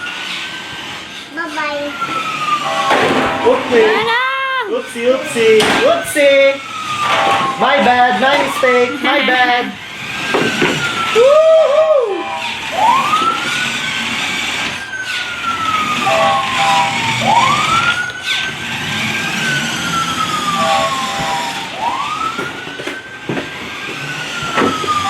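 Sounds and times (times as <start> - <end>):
toy fire truck siren wailing: 0.0 - 25.0
short beeping tones: 2.6 - 3.7, 7.0 - 7.7, 12.1 - 12.7, 16.1 - 17.3.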